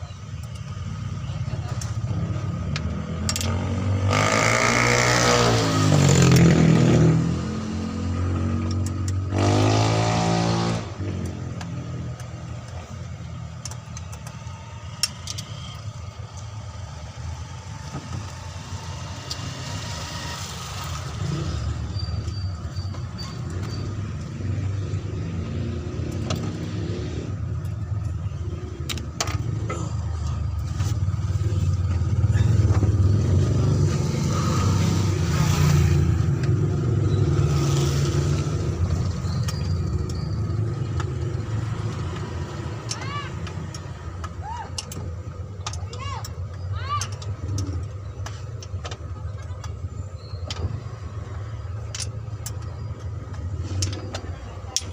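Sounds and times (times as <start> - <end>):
sharp metallic clicks: 0.2 - 4.2, 8.5 - 9.5, 11.0 - 16.6, 30.5 - 54.9
vehicle engine running: 6.1 - 54.9.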